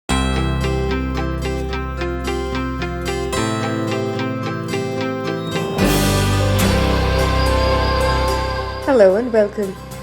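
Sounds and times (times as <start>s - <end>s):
held bass line: 2.1s - 9.4s
plucked-string notes: 2.4s - 9.8s.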